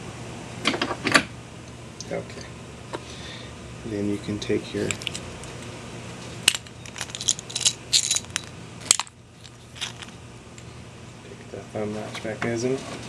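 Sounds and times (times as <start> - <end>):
metal lock parts clicking: 4.8 - 5.2, 6.5 - 10.1.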